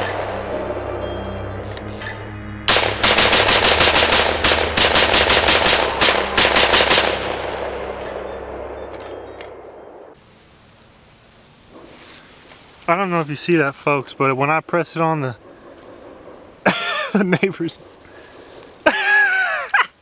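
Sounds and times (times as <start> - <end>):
rifle firing rapidly: 2.7 - 7.7.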